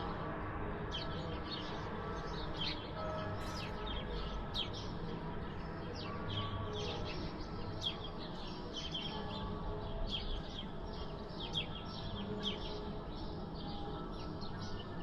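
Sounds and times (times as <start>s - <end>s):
church bells ringing: 2.9s - 5.3s.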